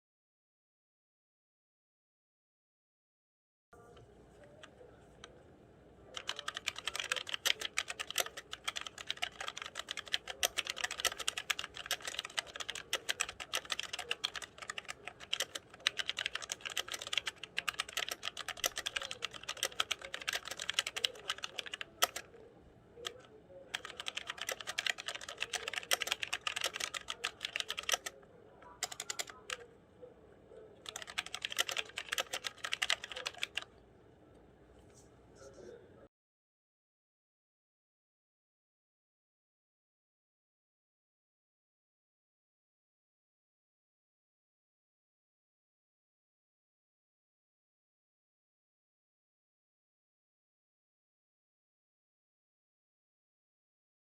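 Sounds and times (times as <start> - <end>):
mechanical keyboard typing: 6.2 - 22.3, 23.0 - 28.2, 28.8 - 29.6, 30.8 - 33.7.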